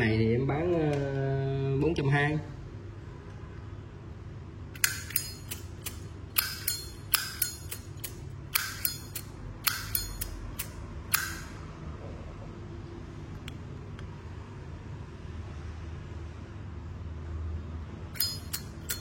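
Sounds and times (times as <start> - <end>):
lighter lid clinking: 4.8 - 11.5, 18.2 - 19.0.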